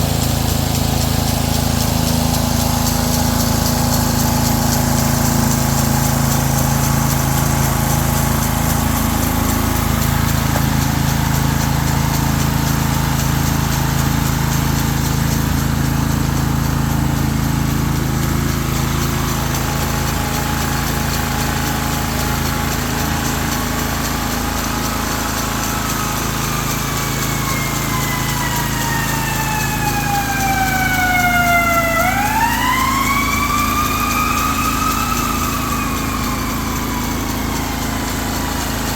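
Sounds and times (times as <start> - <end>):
small engine running: 0.0 - 38.9
siren wailing: 25.6 - 38.9.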